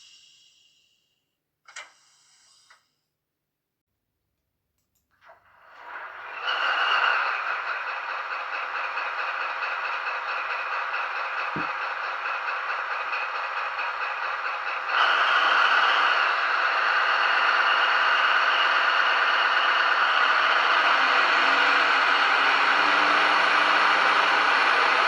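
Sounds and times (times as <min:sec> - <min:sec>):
diesel engine sound through small speaker: 0:05.6 - 0:25.0.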